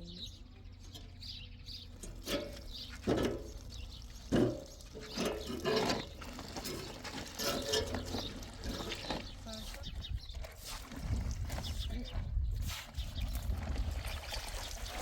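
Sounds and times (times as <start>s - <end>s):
water splashing and pouring: 13.2s - 15.0s.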